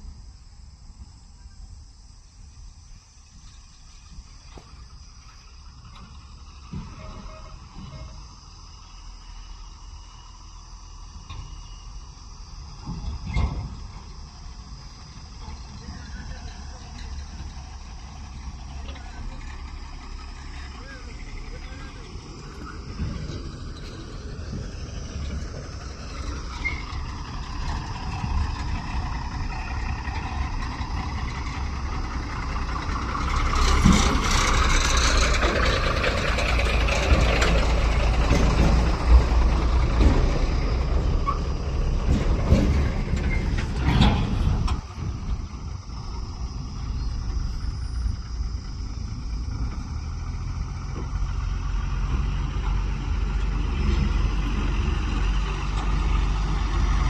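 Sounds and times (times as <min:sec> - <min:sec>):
diesel engine rumbling: 0:00.0 - 0:57.0
sharp engine knocks: 0:05.8 - 0:08.3, 0:12.8 - 0:49.9.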